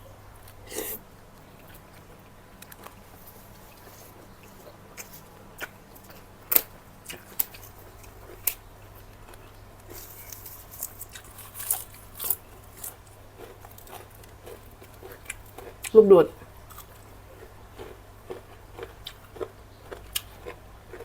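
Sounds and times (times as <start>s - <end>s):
chewing with wet mouth clicks: 1.4s - 21.0s.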